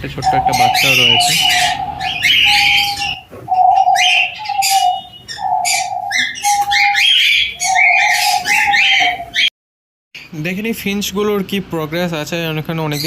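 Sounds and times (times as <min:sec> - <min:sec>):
doves cooing: 0:00.0 - 0:09.5
small cage birds chirping: 0:00.0 - 0:09.5, 0:12.4 - 0:13.0.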